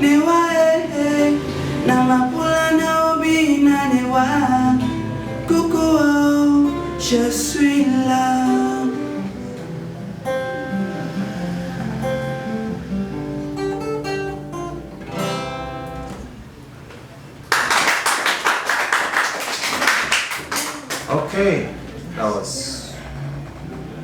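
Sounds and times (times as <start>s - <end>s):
acoustic guitar music: 0.0s - 17.5s.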